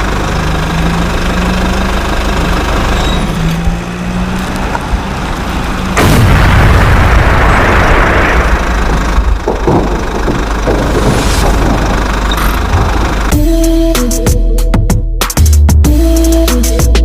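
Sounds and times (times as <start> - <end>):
heavy vehicle engine rumbling: 0.0 - 14.7
short knocks: 9.3 - 13.2.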